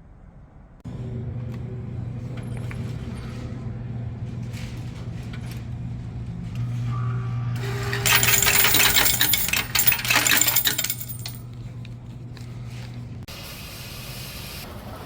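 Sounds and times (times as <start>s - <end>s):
steady low hum: 0.0s - 13.3s
small metal objects jingling: 8.0s - 11.4s.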